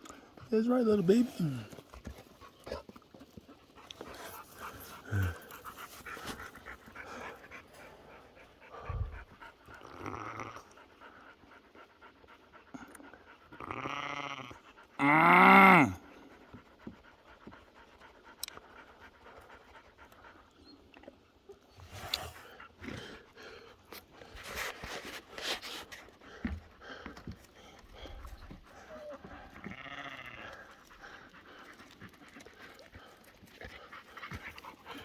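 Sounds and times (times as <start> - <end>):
dog panting: 0.1 - 13.6, 16.0 - 35.0
goat bleating: 29.6 - 30.4.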